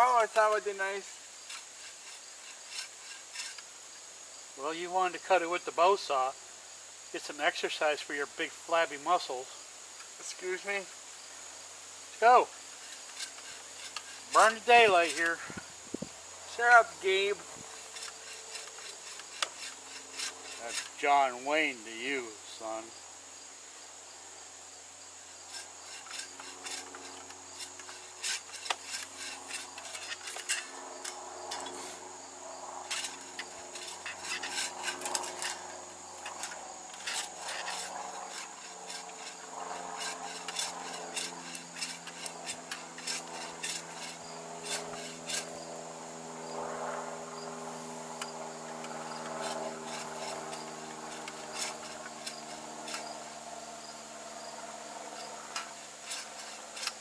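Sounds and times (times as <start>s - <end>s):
bow saw cutting wood: 0.0s - 3.8s, 12.2s - 15.5s, 16.5s - 21.5s, 25.4s - 45.6s, 48.2s - 54.0s, 55.1s - 57.0s
crickets chirping: 0.0s - 57.0s.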